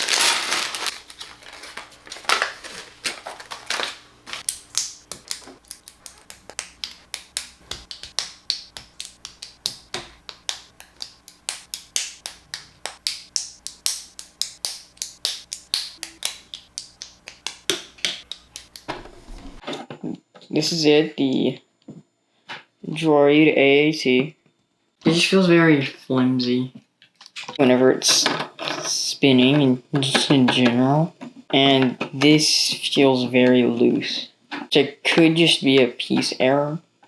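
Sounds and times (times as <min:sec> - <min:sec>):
crinkling: 0:00.0 - 0:19.6.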